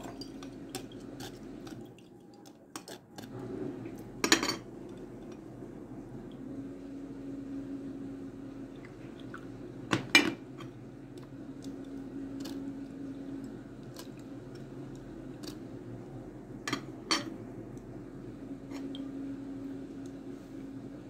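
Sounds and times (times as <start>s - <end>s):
low hum: 3.2s - 21.0s.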